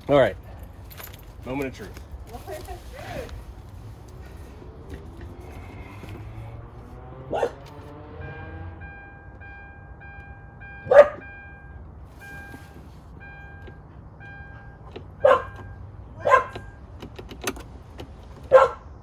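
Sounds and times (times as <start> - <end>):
dog barking: 7.3 - 7.6, 10.8 - 11.3, 15.2 - 15.6, 16.2 - 16.7, 18.5 - 18.9
car warning chime beeping: 8.0 - 17.6.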